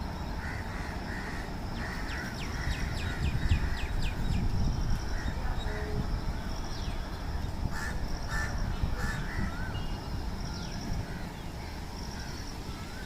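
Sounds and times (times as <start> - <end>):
birds chirping: 0.0 - 13.0
harsh bird calls: 0.2 - 13.0.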